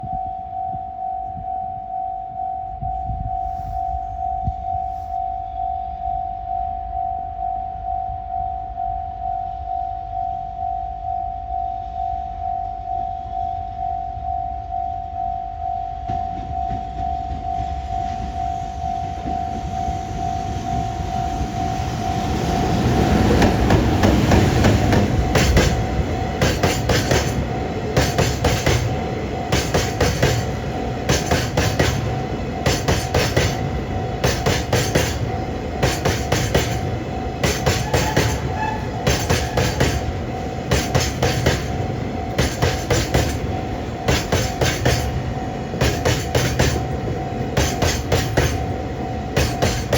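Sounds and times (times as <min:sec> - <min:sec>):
electric locomotive passing: 0:00.0 - 0:49.9
train wheels clattering over rail joints: 0:22.5 - 0:49.9.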